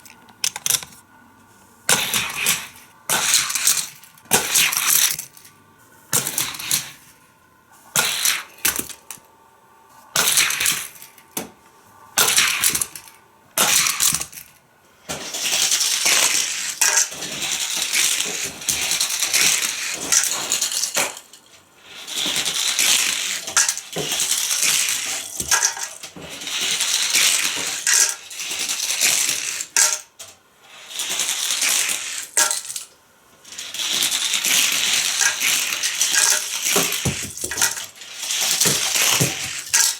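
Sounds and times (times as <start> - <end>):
plastic track pieces clicking: 0.0 - 1.0, 1.9 - 5.5, 15.2 - 21.4, 22.0 - 39.9.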